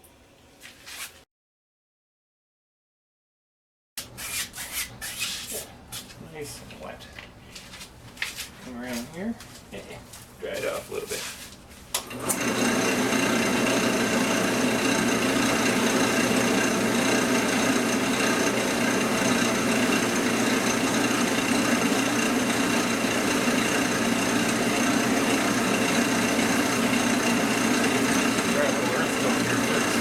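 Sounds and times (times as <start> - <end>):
wood lathe motor whir: 12.0 - 30.0.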